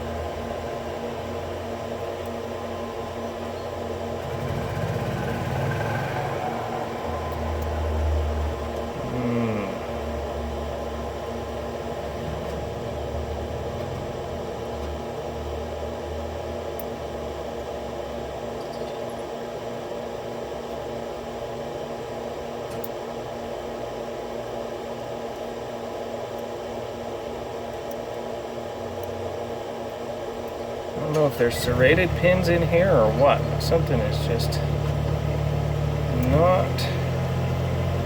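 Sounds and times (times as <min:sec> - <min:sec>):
fan whirring hum: 0:00.0 - 0:38.0.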